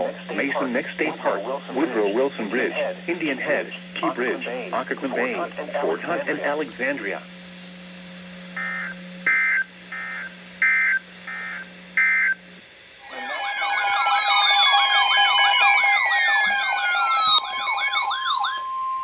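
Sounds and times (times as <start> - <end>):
low radio hum: 0.0 - 10.4
buzzy data bursts: 13.0 - 18.6
long falling whistles: 13.0 - 19.0
siren-like wails: 13.0 - 19.0.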